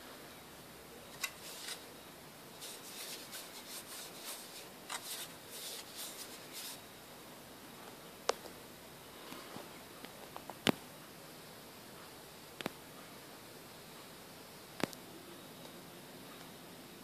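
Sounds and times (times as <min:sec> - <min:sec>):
scraping and rubbing: 0:01.1 - 0:01.9, 0:02.6 - 0:06.8.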